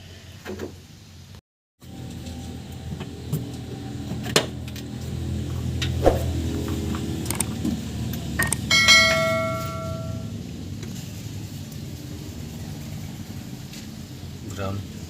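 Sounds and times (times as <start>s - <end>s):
metal tool ringing bell-like: 8.5s - 10.3s
low steady hum: 8.5s - 10.5s.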